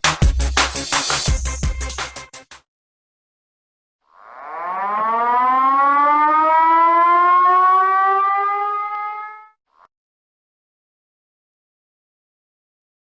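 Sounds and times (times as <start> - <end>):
siren winding up: 4.1 - 9.6.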